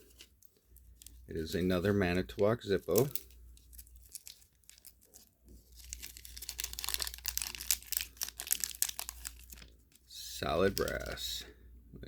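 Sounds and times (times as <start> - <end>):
packaging crinkling: 2.8 - 10.0.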